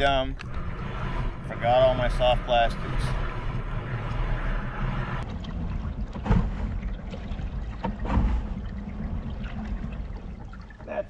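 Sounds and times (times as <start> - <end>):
steady low rumble: 0.0 - 10.8
water washing against kayak hull: 0.0 - 11.0
knocks on kayak: 7.8 - 8.5.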